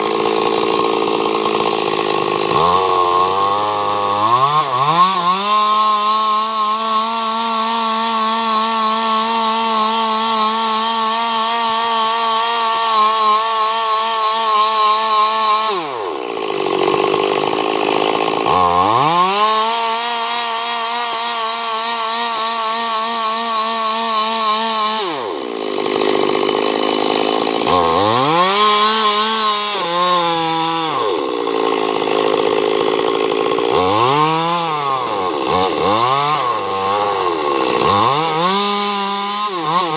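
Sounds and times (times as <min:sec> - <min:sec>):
chainsaw engine whining: 0:00.0 - 0:39.9.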